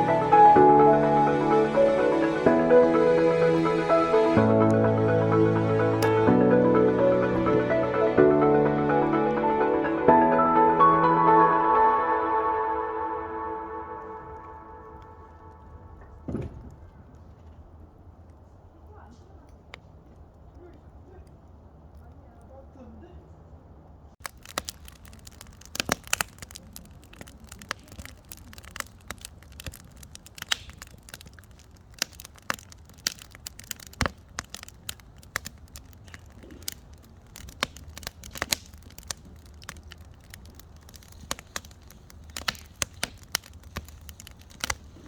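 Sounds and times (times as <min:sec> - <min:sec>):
campfire crackling and popping: 0:00.0 - 0:22.7, 0:24.1 - 0:45.0.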